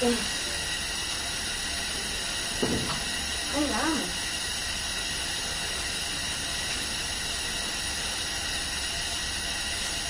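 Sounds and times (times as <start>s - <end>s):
steady hiss: 0.0s - 10.0s.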